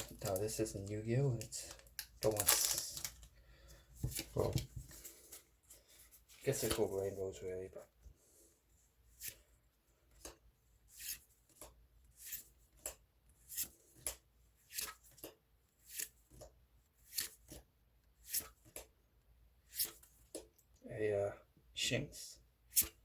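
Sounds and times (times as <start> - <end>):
cards sliding with papery swish: 18.2 - 18.8, 19.7 - 20.4.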